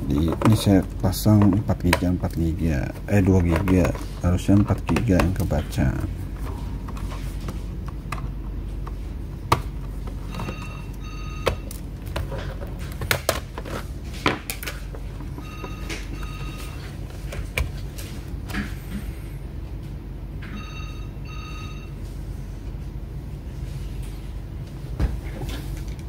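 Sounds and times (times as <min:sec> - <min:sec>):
electronic ring in short pulses: 0:10.3 - 0:11.4, 0:20.5 - 0:22.0.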